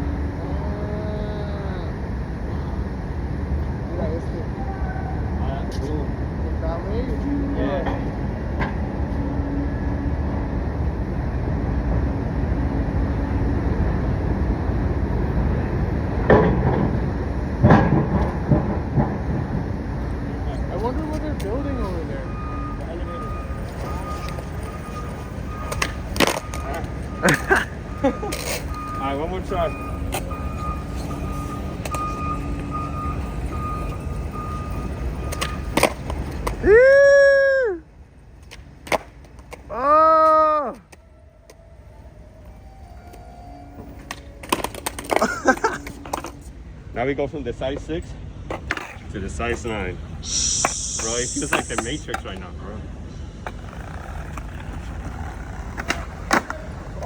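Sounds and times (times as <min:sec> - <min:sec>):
skateboard wheels rolling on concrete: 0:00.0 - 0:57.0
skateboard clacking on ground: 0:23.3 - 0:27.7, 0:33.4 - 0:36.7, 0:38.4 - 0:39.7, 0:44.0 - 0:46.5, 0:53.4 - 0:57.0
high held tone: 0:50.2 - 0:52.1
skateboard rumbling on concrete: 0:53.4 - 0:57.0.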